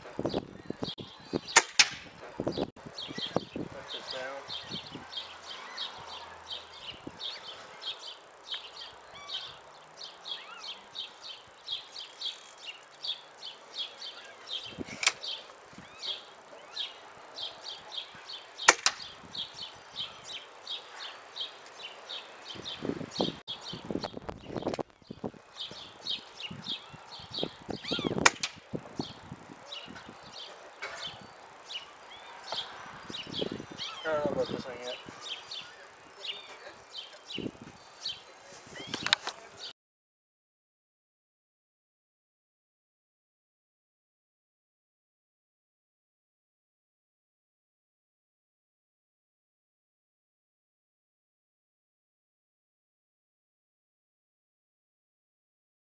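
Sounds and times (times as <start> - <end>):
air rifle shot crack: 1.5 - 2.1, 18.7 - 19.1, 28.2 - 28.6
insect chirping: 2.4 - 39.0.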